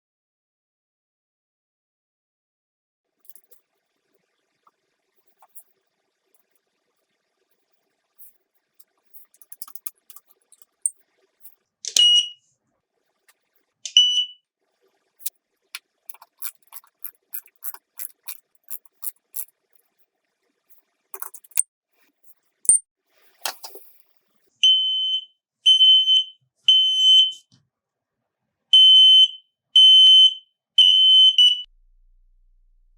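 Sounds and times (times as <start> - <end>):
smoke detector alarm beeping: 11.9 - 12.4, 13.9 - 14.4, 24.6 - 27.5, 28.8 - 31.7
smoke detector chirps: 11.9 - 12.4, 13.9 - 14.4, 24.6 - 27.4, 28.8 - 31.7.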